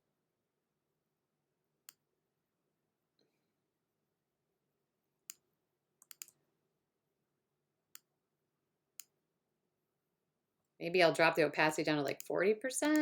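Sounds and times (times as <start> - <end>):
computer mouse clicks: 6.0 - 6.4, 12.1 - 13.0.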